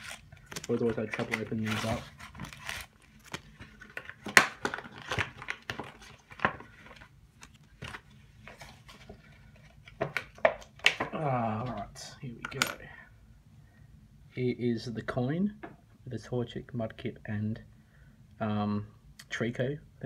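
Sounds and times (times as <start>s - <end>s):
plastic packaging tearing: 0.0s - 6.5s.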